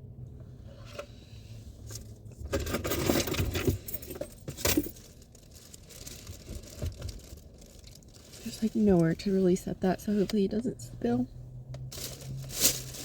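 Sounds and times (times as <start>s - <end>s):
plastic rustling and clicking: 4.8s - 9.2s.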